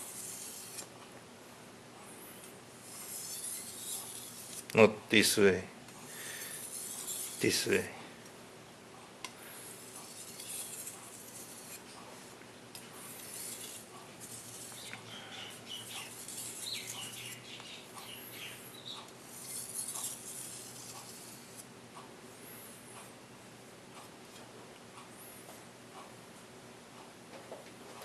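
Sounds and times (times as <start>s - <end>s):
knife scraping on whetstone: 0.0s - 0.9s, 2.8s - 4.7s, 6.1s - 7.7s, 9.7s - 12.0s, 13.0s - 17.4s, 19.3s - 21.6s.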